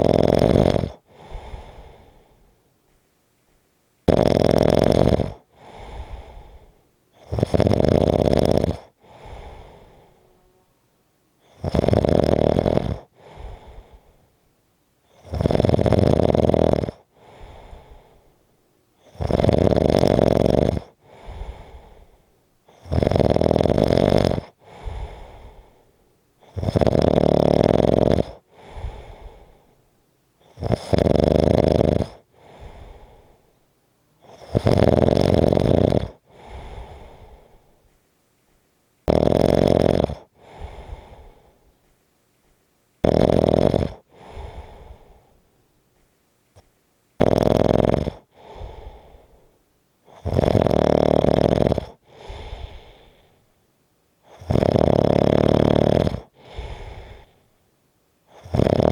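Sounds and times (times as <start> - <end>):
loud snoring: 0.0 - 2.2, 4.0 - 10.5, 11.4 - 14.0, 15.1 - 18.0, 19.0 - 25.7, 26.4 - 29.5, 30.4 - 33.4, 34.2 - 37.4, 39.0 - 41.5, 43.0 - 45.2, 47.2 - 49.2, 50.1 - 53.2, 54.2 - 57.3, 58.3 - 58.9
soft breath sound: 0.8 - 4.1, 5.3 - 7.6, 8.7 - 11.7, 12.7 - 15.4, 16.9 - 19.8, 20.8 - 22.9, 24.3 - 26.8, 28.2 - 30.9, 32.0 - 35.1, 36.0 - 39.1, 40.0 - 43.0, 43.8 - 47.2, 48.1 - 50.5, 51.8 - 54.7, 56.1 - 58.9.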